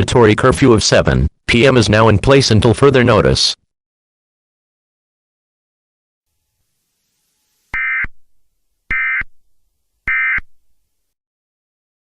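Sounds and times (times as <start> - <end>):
digital data tone bursts: 7.7 - 8.2, 8.9 - 9.3, 10.1 - 10.5.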